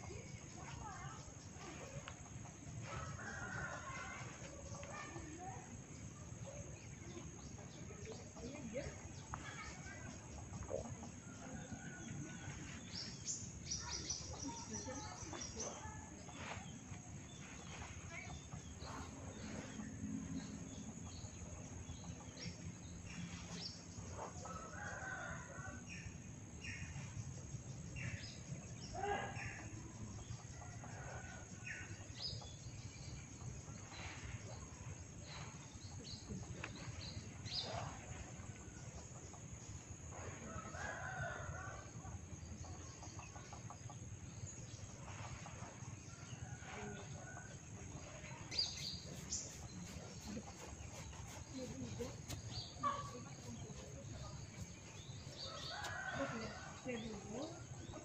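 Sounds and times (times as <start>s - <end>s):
chickens clucking: 48.5s - 56.1s
rooster crowing: 55.4s - 57.0s.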